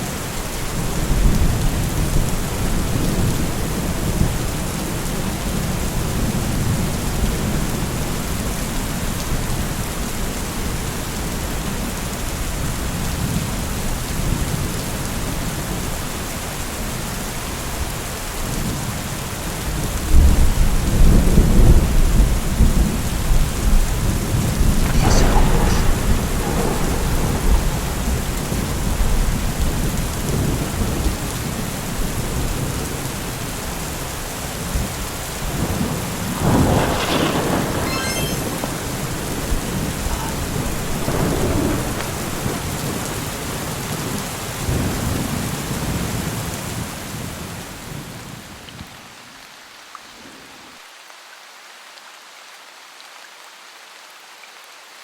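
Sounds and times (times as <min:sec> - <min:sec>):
steady rain: 0:00.0 - 0:55.0
thunder crackle: 0:23.6 - 0:31.3, 0:35.4 - 0:45.2
thunder rumble: 0:23.6 - 0:31.6, 0:35.4 - 0:45.2.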